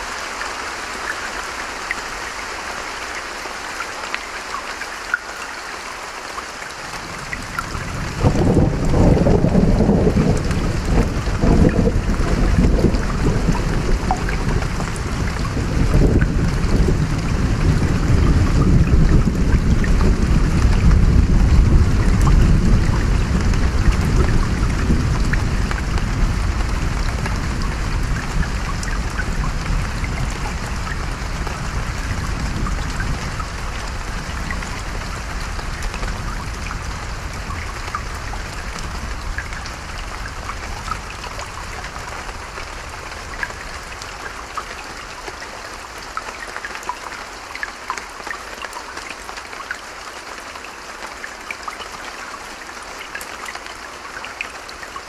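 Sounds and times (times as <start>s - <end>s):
rain patter: 0.0s - 55.0s
stream water running: 0.0s - 55.0s
water drips: 1.0s - 21.2s, 22.0s - 55.0s
distant thunder rolling: 8.0s - 35.3s.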